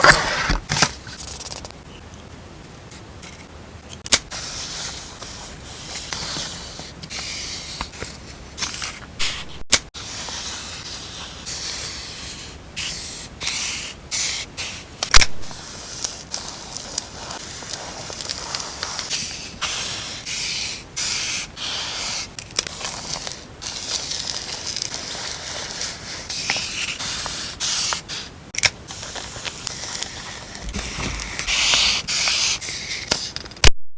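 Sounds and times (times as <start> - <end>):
plastic and paper rustling: 15.4 - 19.6, 22.4 - 28.2, 28.9 - 33.6.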